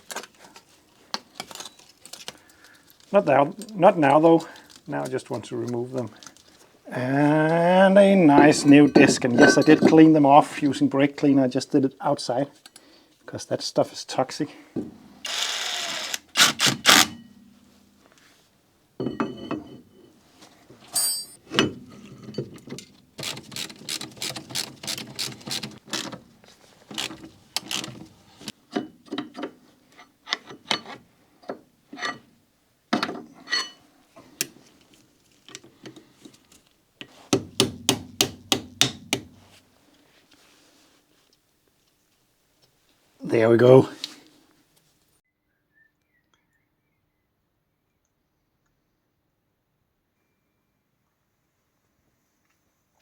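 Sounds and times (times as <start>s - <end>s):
hand tools clanking on metal: 8.0s - 10.6s, 19.0s - 20.1s, 20.9s - 26.2s.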